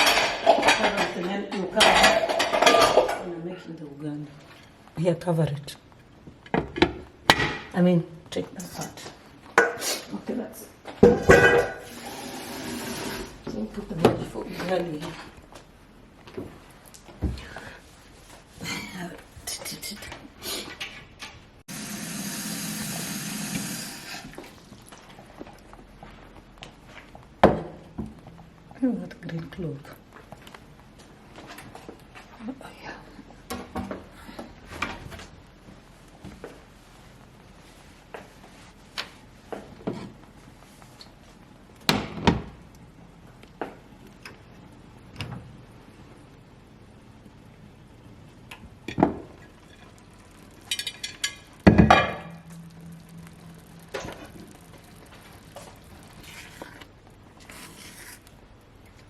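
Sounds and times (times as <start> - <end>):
kitchenware clicks and knocks: 0.0 - 3.3, 11.0 - 11.9
cookware and utensils clattering: 0.0 - 3.4, 11.0 - 12.2, 50.6 - 53.2
water running from a tap: 11.8 - 13.4, 21.7 - 24.9.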